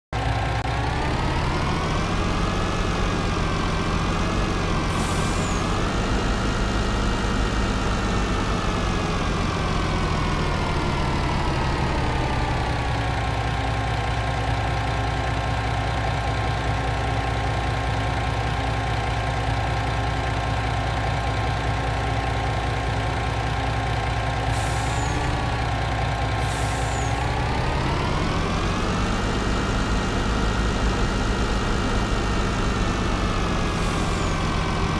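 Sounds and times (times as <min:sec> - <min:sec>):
cutting machine engine running: 0:00.7 - 0:13.1, 0:26.4 - 0:34.9.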